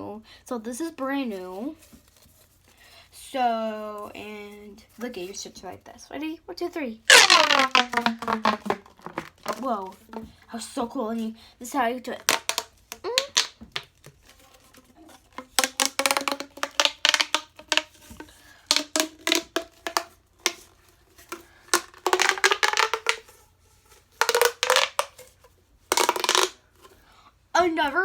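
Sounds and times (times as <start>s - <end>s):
plastic pop tube popping: 7.1s - 10.4s, 12.2s - 23.4s, 24.2s - 25.3s, 25.9s - 26.6s.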